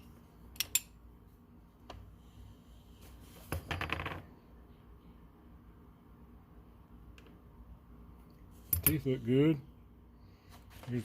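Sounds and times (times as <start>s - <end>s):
metal parts clicking and clinking: 0.6s - 0.9s, 8.7s - 9.1s.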